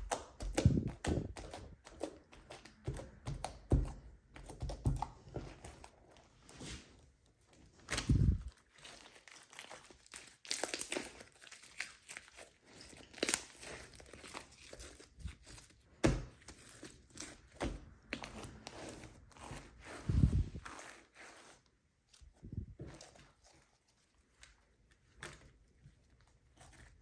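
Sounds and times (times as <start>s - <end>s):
slime crinkling and crackling: 7.5s - 27.0s.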